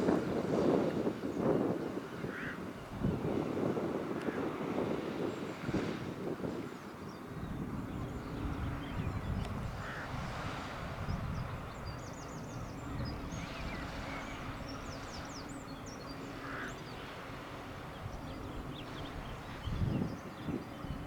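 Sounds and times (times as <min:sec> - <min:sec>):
birds chirping: 0:11.0 - 0:21.0.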